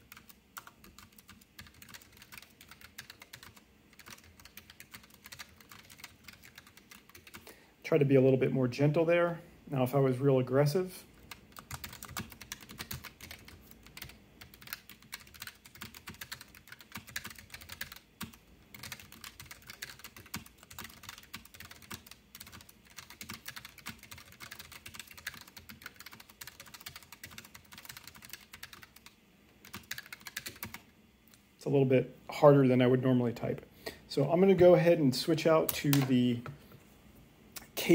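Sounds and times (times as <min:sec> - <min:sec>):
mechanical keyboard fast typing: 0:00.0 - 0:07.4, 0:11.3 - 0:30.8.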